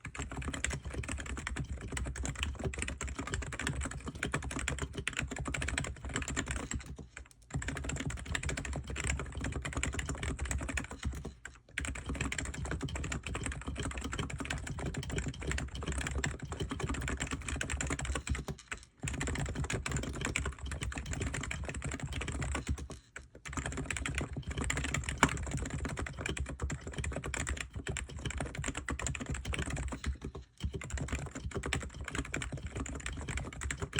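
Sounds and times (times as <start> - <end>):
fast typing on keyboard: 0.0 - 33.9.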